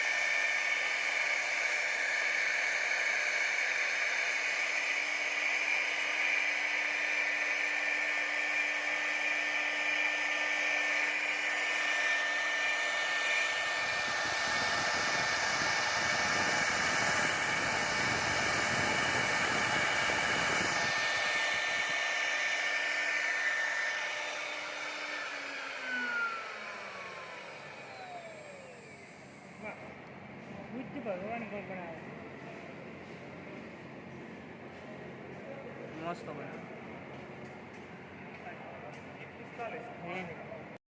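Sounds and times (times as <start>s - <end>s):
router bit cutting workpiece: 0.0s - 30.1s
router spindle whine: 0.0s - 33.0s.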